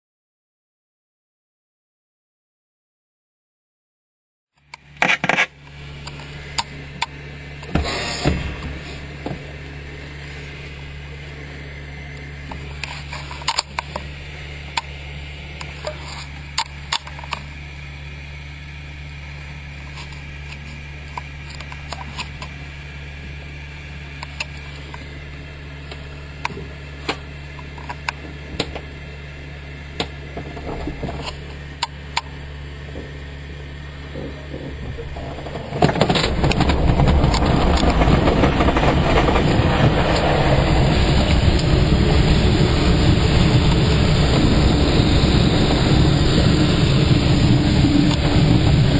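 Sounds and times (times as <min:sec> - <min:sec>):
cockpit low hum: 0:04.6 - 0:48.9
glider launch rushing rumble: 0:35.0 - 0:48.9.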